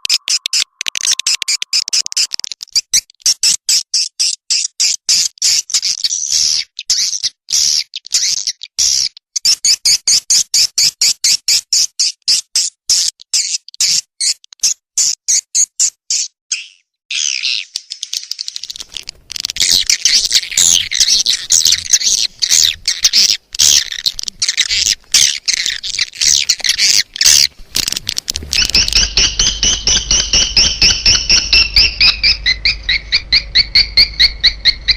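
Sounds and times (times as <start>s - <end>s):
swiftlet clicking chirps: 0.0s - 3.1s, 18.4s - 34.9s
bird twittering chatter: 0.0s - 9.6s, 16.5s - 34.9s.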